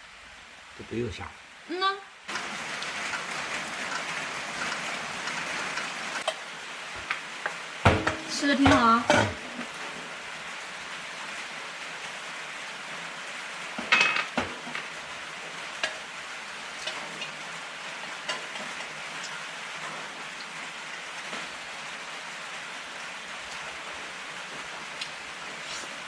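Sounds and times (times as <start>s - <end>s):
steady rain hissing: 0.0s - 26.0s
dishes and cutlery clinking: 13.8s - 14.5s.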